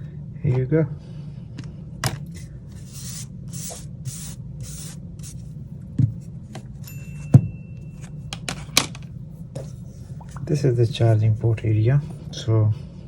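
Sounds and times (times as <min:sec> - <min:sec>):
low steady hum: 0:00.0 - 0:13.0
hissing puffs of air: 0:02.3 - 0:05.5.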